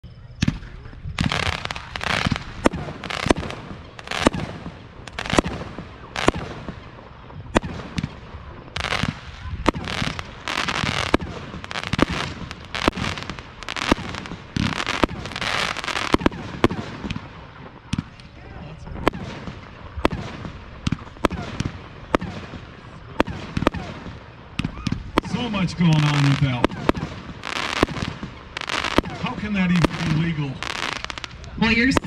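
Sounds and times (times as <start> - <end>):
firework bursts: 0.4 - 32.0
firework shots: 0.4 - 32.0.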